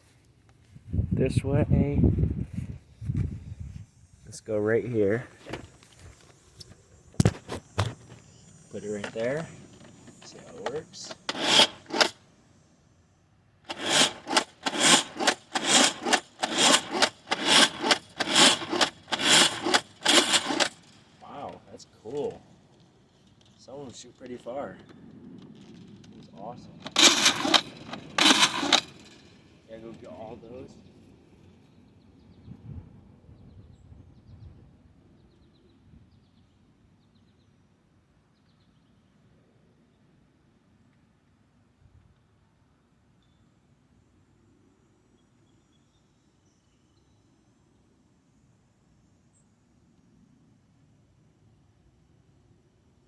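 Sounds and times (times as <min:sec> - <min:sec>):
plastic pump strokes rasping: 0:08.8 - 0:12.2, 0:13.7 - 0:21.0, 0:26.8 - 0:29.2.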